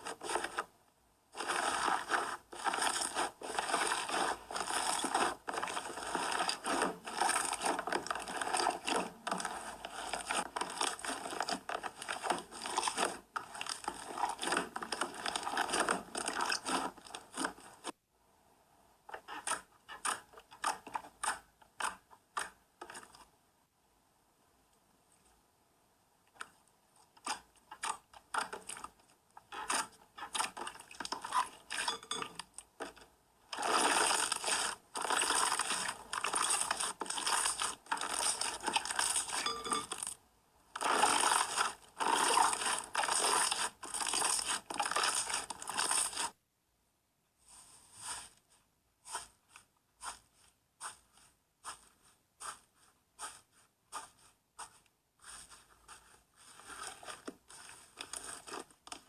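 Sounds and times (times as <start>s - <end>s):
slime squelching and popping: 1.4s - 17.9s, 27.2s - 40.2s, 40.8s - 46.4s.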